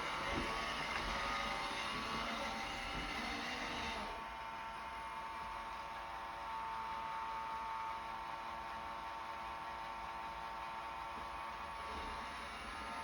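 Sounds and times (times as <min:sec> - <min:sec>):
robot vacuum motor whine: 0:00.0 - 0:04.2.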